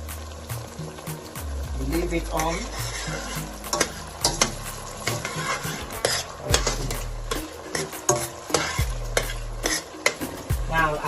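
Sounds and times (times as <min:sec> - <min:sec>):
onions sizzling in oil: 0:00.0 - 0:11.0
spoon stirring and scraping pot: 0:02.4 - 0:10.5.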